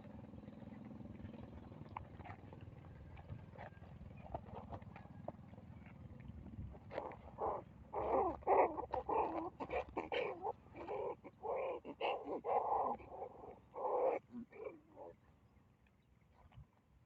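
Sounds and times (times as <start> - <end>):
baby monkey yelping: 6.9 - 15.1.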